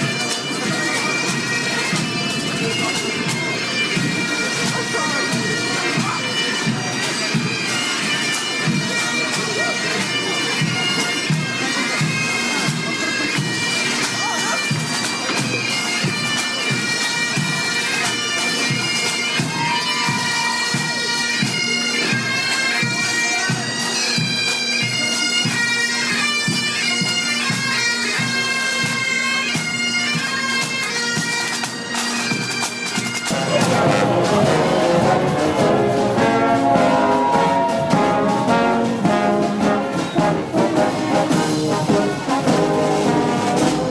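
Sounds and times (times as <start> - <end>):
bagpipe melody over drone: 20.7 - 40.5
brass band playing: 32.6 - 43.9
drum beat: 33.3 - 43.9.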